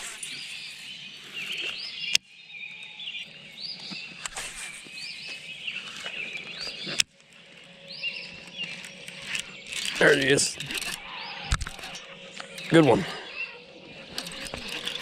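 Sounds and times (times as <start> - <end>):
songbirds singing: 0.0 - 15.0
sharp clicks: 8.4 - 12.8.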